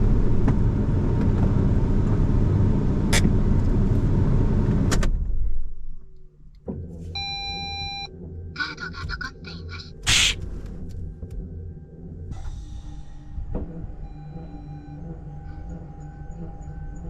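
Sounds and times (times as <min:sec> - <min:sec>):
car road and engine rumble: 0:00.0 - 0:17.0
steady beep: 0:07.2 - 0:09.3, 0:14.0 - 0:15.2.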